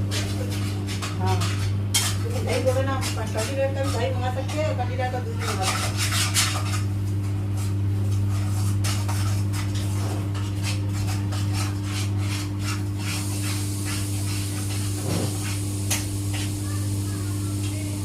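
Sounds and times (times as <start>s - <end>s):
washing machine humming: 0.0s - 18.0s
hiss: 13.2s - 17.0s.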